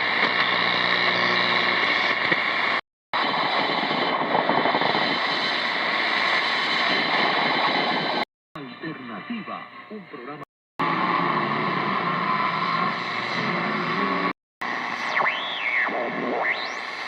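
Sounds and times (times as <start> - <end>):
radio static hiss: 0.0 - 17.0.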